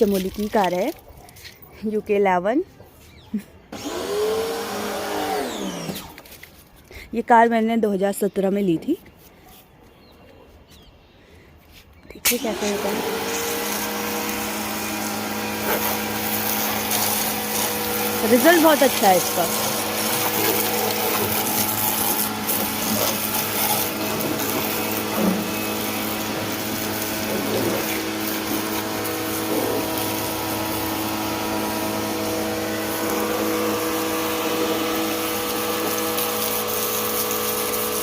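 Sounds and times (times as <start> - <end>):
pressure washer motor hum: 3.7 - 6.3, 12.3 - 38.0
water jet hissing: 12.3 - 38.0.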